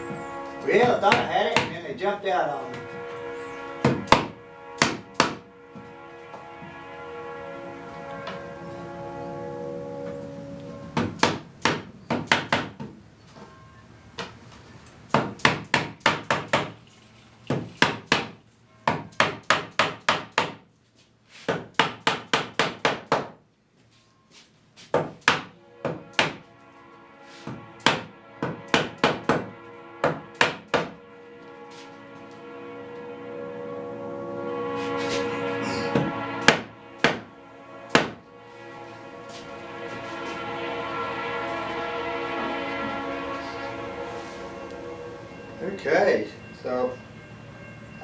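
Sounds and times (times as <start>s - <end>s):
hammer blows on wood: 0.0s - 2.0s, 2.6s - 9.2s, 10.9s - 12.9s, 15.1s - 16.8s, 17.5s - 20.7s, 21.4s - 23.4s, 24.8s - 33.5s, 34.5s - 44.6s.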